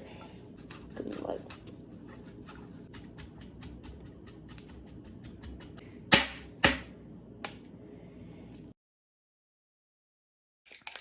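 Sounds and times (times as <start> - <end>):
knife cutting herbs: 0.6 - 5.8.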